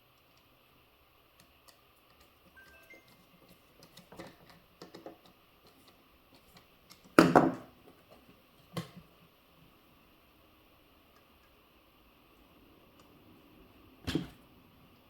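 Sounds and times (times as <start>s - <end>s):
small parts and tools clicking and rattling: 1.4s - 7.1s
knock on workbench: 7.2s - 7.6s.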